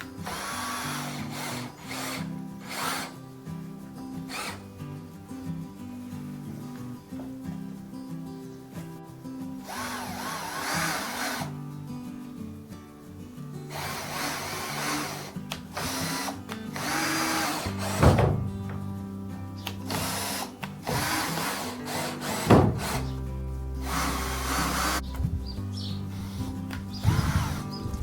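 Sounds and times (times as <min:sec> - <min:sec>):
power tool working wood: 0:00.0 - 0:03.2, 0:04.3 - 0:04.6, 0:09.6 - 0:11.6, 0:13.7 - 0:18.8, 0:19.6 - 0:23.2, 0:23.8 - 0:25.3, 0:26.1 - 0:28.0
background music: 0:00.0 - 0:28.0
sharp knocks: 0:15.8 - 0:18.9, 0:19.9 - 0:23.1.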